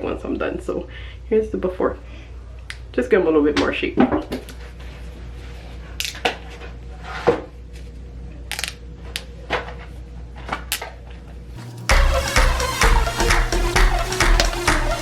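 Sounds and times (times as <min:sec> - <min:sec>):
music: 0:11.6 - 0:15.0.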